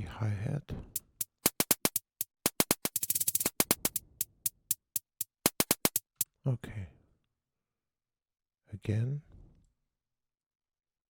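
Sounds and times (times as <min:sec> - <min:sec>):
drum machine hi-hat ticks: 0:00.9 - 0:06.3.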